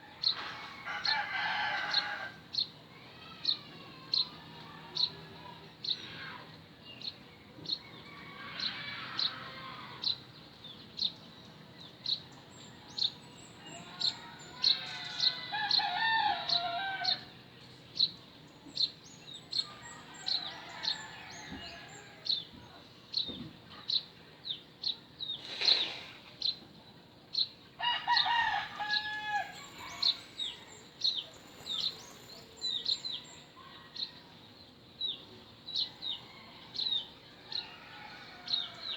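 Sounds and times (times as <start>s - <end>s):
roosters crowing: 0.1s - 2.5s, 8.0s - 10.0s, 13.6s - 17.4s, 19.5s - 22.5s, 27.8s - 33.4s, 36.0s - 38.9s.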